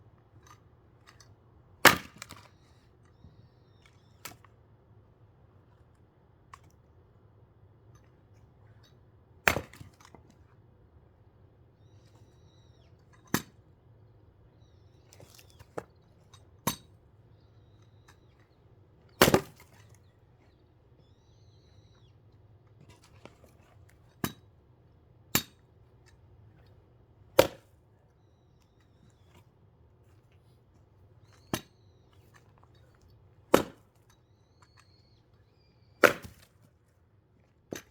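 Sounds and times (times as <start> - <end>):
axe splitting firewood logs: 1.8 - 2.5, 9.4 - 10.3, 15.1 - 16.9, 19.1 - 20.0, 22.8 - 24.6, 25.3 - 26.3, 27.4 - 27.8, 31.3 - 34.9, 36.0 - 37.9.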